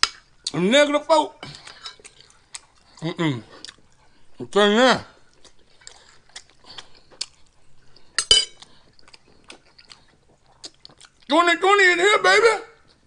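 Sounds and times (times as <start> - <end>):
metal utensil clinking on dish: 8.2 - 8.6.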